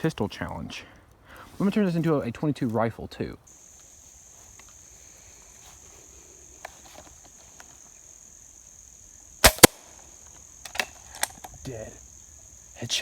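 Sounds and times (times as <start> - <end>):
sharp gunshot cracks: 9.4 - 9.9.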